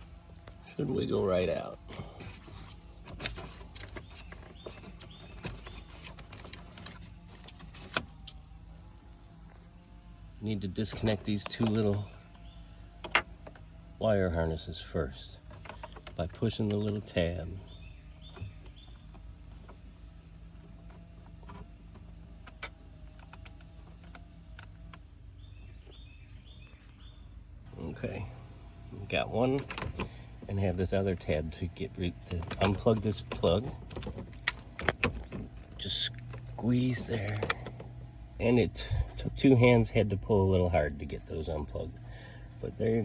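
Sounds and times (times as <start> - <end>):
low hum: 0.0 - 43.0.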